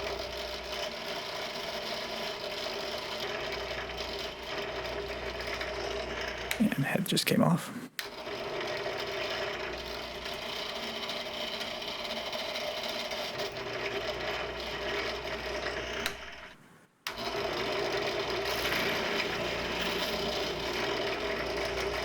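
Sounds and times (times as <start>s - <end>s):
drill press running: 12.0s - 16.1s, 17.1s - 22.0s.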